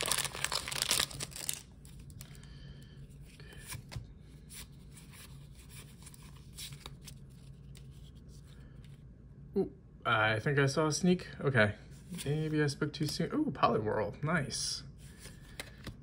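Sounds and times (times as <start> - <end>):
foil pack tearing open: 0.0 - 1.7
cards rustling and clicking: 0.0 - 2.4, 3.2 - 9.0, 15.1 - 16.0.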